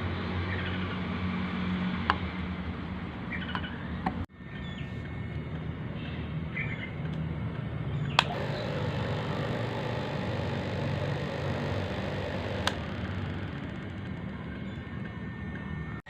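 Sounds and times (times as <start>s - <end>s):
sharp click: 8.1s - 14.2s
higher hum: 8.2s - 14.5s
electric water pump humming: 8.2s - 14.7s.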